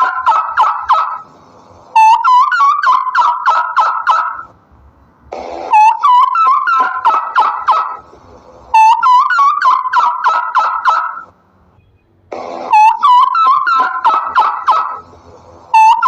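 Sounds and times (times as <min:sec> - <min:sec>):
turkey gobbling: 0:00.0 - 0:01.2, 0:02.0 - 0:04.5, 0:05.7 - 0:08.0, 0:08.8 - 0:11.2, 0:12.7 - 0:15.0.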